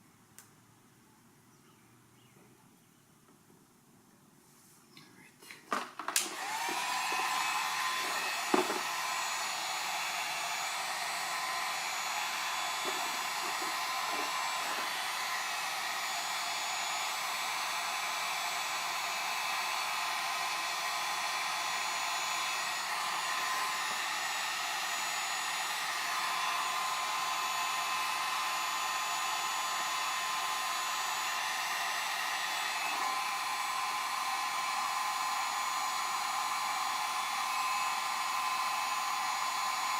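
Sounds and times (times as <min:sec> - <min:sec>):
heat gun fan whining and hissing: 0:05.7 - 0:39.9.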